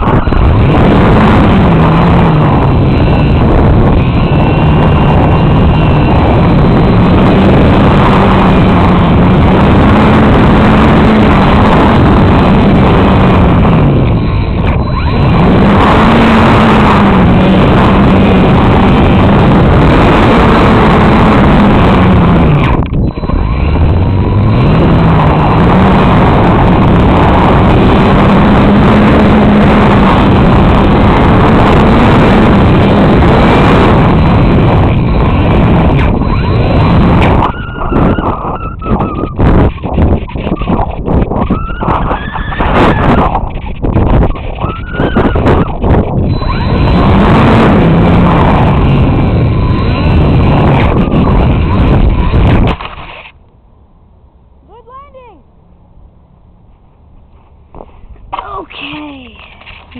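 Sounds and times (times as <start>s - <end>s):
electric motor and propeller: 0.0s - 53.4s
wind rushing over microphone: 0.0s - 58.4s.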